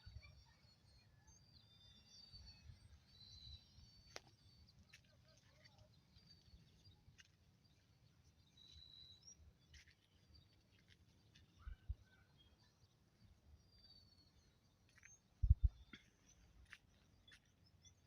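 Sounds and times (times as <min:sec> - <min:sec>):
faint birds chirping: 0:00.0 - 0:18.0
low rumble: 0:15.4 - 0:15.8.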